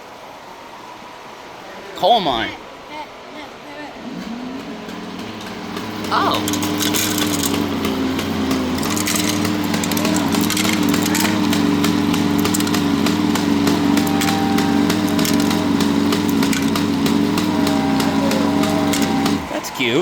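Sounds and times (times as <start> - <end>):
small electric motor humming: 4.2 - 19.6.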